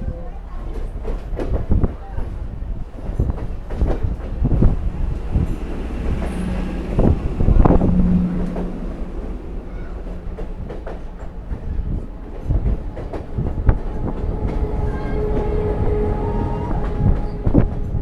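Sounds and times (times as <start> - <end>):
train wheels clicking over rail joints: 0.5 - 18.0.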